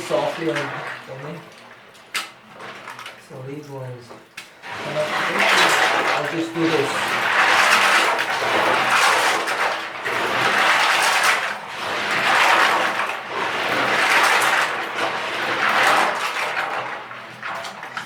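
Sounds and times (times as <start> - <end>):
plastic pieces swished in water: 4.8 - 18.0.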